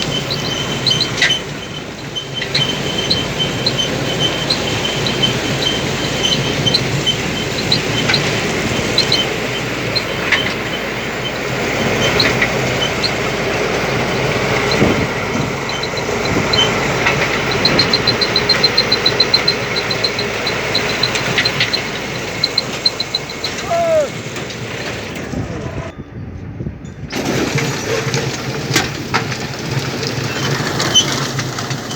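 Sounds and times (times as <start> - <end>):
harvesting machinery running: 0.0 - 26.0, 27.1 - 31.9
high-pitched mechanical squeak: 0.0 - 26.0, 30.0 - 31.9.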